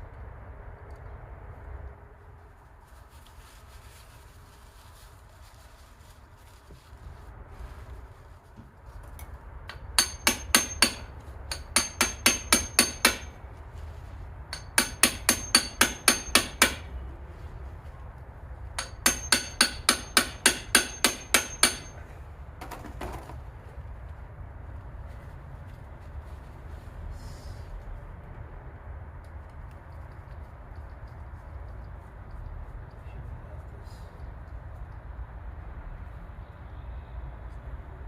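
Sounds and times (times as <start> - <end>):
metal-on-metal hammering: 9.7 - 13.4, 14.5 - 17.0, 18.8 - 22.0.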